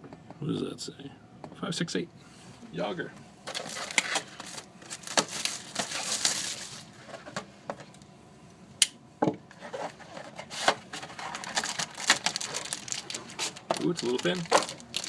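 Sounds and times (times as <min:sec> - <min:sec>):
packaging scraping and rustling: 0:03.4 - 0:07.4, 0:09.5 - 0:15.0.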